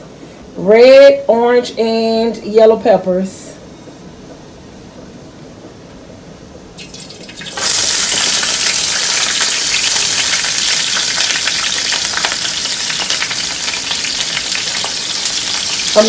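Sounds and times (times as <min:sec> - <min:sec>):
peppers sizzling in hot oil: 0:06.8 - 0:16.0
oil hissing in a pan: 0:06.9 - 0:16.0.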